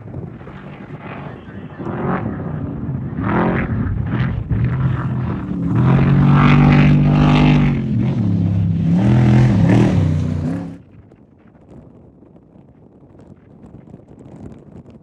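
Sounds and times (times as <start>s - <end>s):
off-road engine revving: 0.1s - 10.8s.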